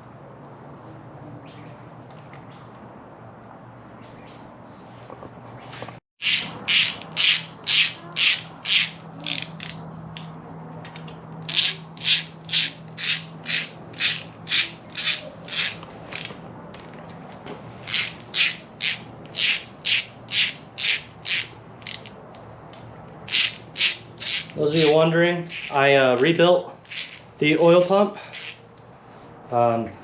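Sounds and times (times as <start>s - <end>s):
ratchet wrench pawl clicking: 6.2s - 9.8s, 11.4s - 16.4s, 17.9s - 22.1s, 23.3s - 28.6s.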